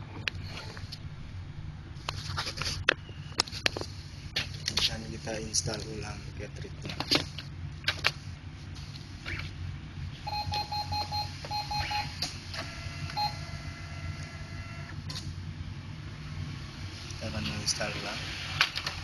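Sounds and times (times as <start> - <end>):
short electronic beeps: 10.2 - 12.2, 13.1 - 13.5
printer whine: 10.3 - 15.1.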